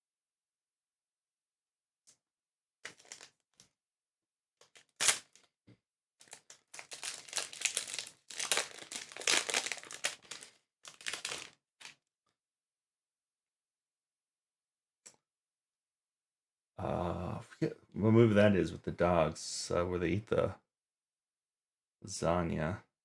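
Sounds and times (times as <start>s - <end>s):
wrapper ripping open: 2.8s - 3.3s, 4.6s - 5.5s, 6.2s - 11.9s
plastic foil crinkling: 2.8s - 3.4s, 6.2s - 11.9s.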